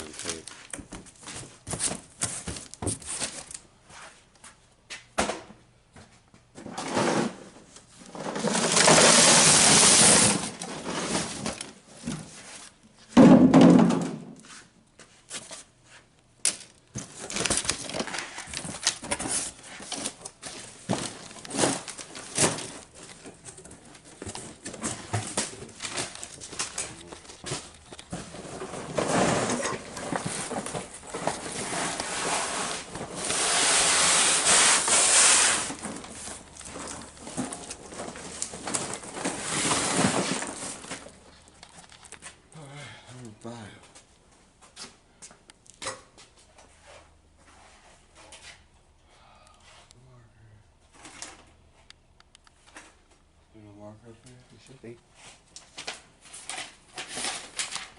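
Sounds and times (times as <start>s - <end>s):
packing tape ripping off roll: 8.2s - 11.7s, 16.5s - 42.3s.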